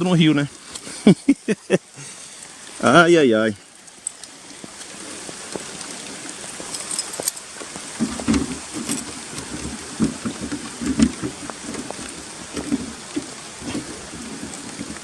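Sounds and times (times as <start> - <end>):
rain falling: 0.0 - 15.0
dull thumps: 8.0 - 15.0.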